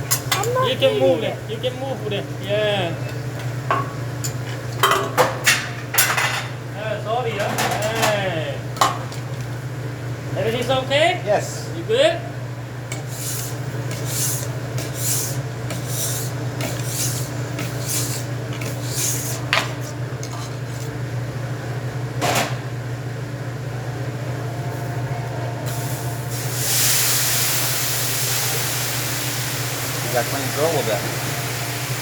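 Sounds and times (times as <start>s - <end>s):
steady low hum: 0.0s - 28.0s
metal spatulas scraping griddle: 12.9s - 20.9s
loud hiss: 25.9s - 32.0s.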